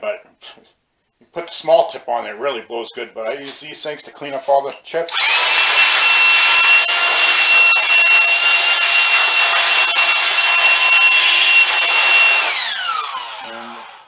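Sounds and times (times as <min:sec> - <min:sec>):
inflator motor whine: 0:05.1 - 0:14.0.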